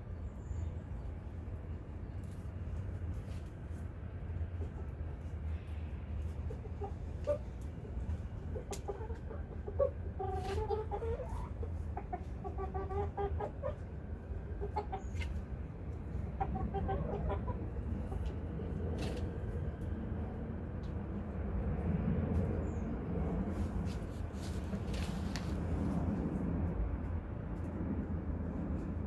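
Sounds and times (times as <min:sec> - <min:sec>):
low background rumble: 0:00.0 - 0:29.0
chickens clucking: 0:06.2 - 0:19.2.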